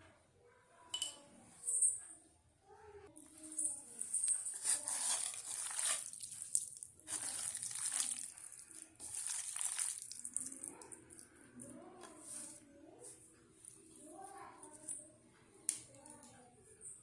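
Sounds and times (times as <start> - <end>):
prawns squelching in marinade: 3.9 - 12.6.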